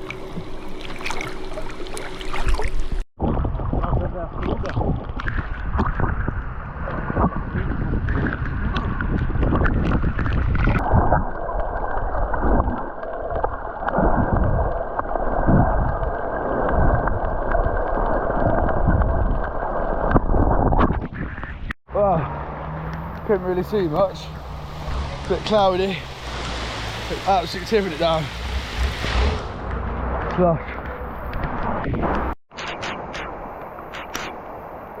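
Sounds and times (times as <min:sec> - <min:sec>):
splashing water: 0:00.0 - 0:32.3
wind rumbling on microphone: 0:02.4 - 0:35.0
heavy rain: 0:23.6 - 0:30.3.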